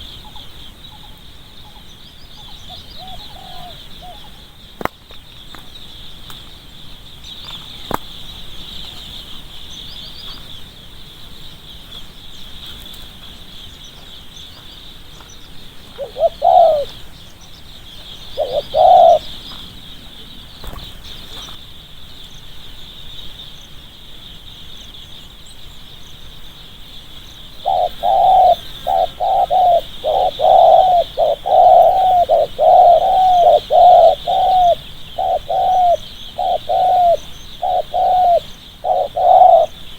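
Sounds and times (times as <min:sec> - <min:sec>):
dove cooing: 0:02.6 - 0:04.5, 0:15.9 - 0:17.0, 0:18.2 - 0:19.4, 0:27.6 - 0:39.9.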